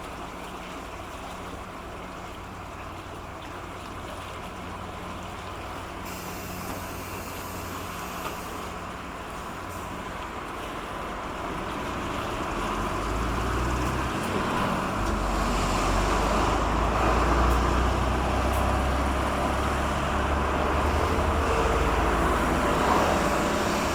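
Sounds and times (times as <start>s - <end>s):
low engine rumble: 0.1s - 23.9s
traffic noise: 6.0s - 23.9s.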